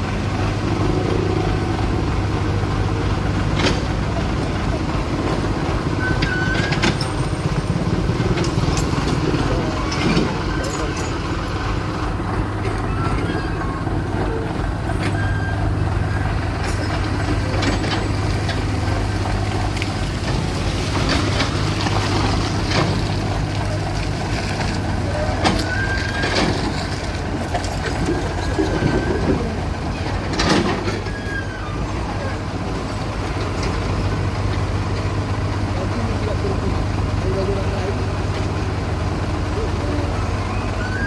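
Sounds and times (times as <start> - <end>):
diesel machinery running: 0.0 - 41.0
clanks and knocks: 25.4 - 31.2.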